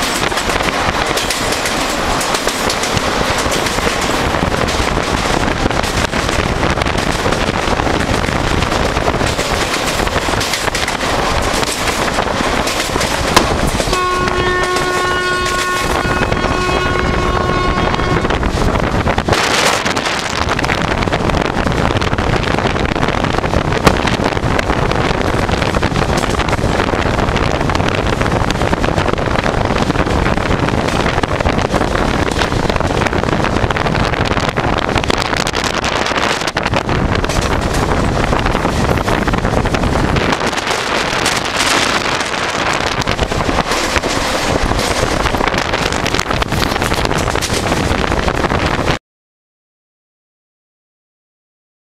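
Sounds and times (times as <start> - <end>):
train rumbling at speed: 0.0 - 49.0
locomotive horn blast: 13.9 - 18.5.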